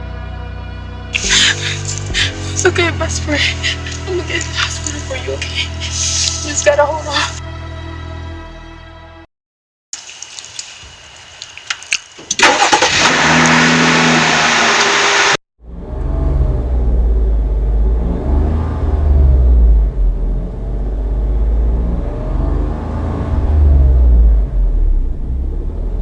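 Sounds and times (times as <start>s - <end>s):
car engine starting: 1.2s - 6.4s, 12.4s - 26.0s
car engine rumbling: 1.2s - 6.7s, 12.4s - 26.0s.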